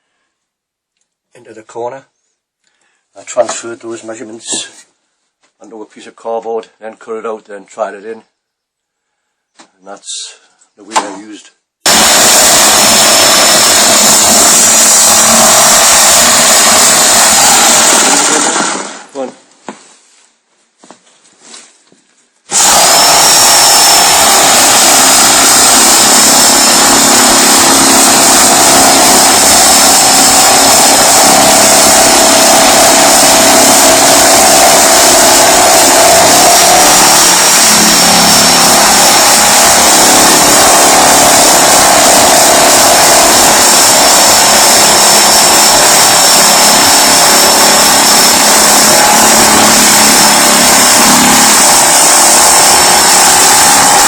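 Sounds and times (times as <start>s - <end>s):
power tool whining: 11.8s - 19.2s, 22.5s - 54.0s.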